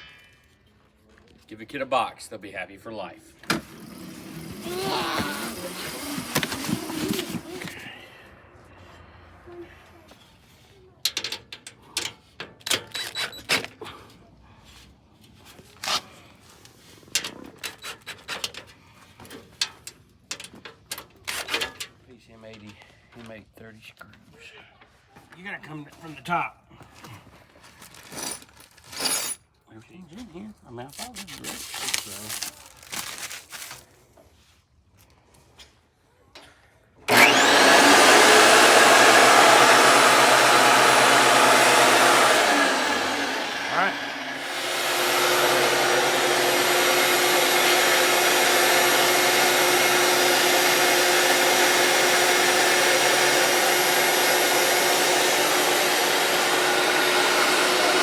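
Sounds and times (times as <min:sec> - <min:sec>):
planer motor whining: 0:03.4 - 0:08.0, 0:37.1 - 0:58.0.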